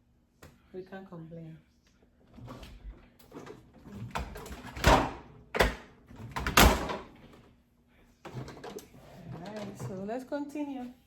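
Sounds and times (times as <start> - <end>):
refrigerator door bumps: 4.2 - 7.1
items rattling: 8.3 - 10.1.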